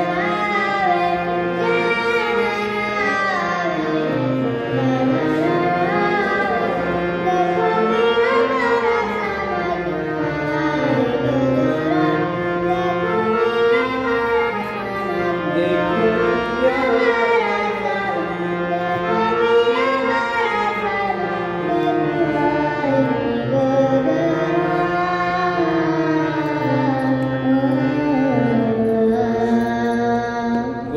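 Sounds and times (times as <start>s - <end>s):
harmonium: 0.0s - 30.9s
man singing: 15.4s - 17.3s.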